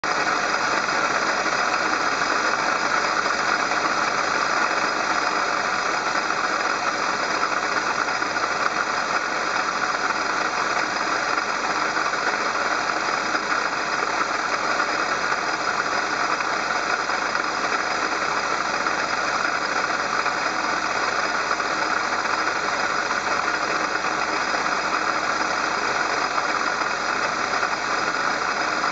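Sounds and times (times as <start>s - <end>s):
car engine running: 0.0s - 28.9s
failing water pump noise: 0.0s - 28.9s.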